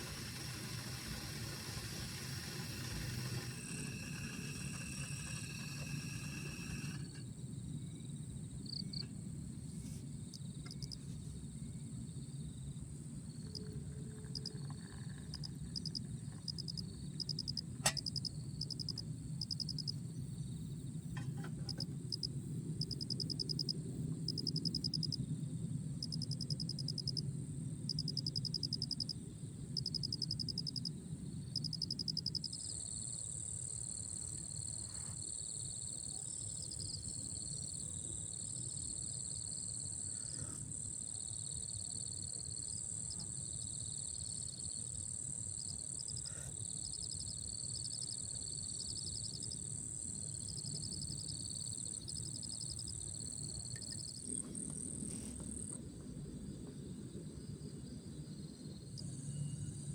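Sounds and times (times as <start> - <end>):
insects chirping and trilling: 0.0 - 59.9
sharp click: 17.4 - 18.9.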